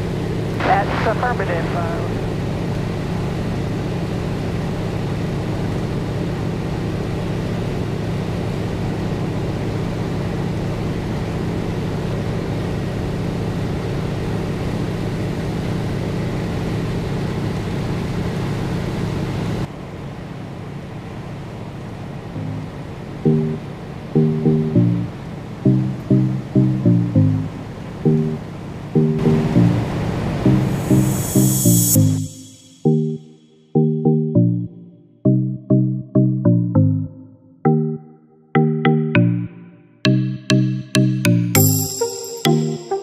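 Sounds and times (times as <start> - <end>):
propeller plane engine droning: 0.0 - 33.1.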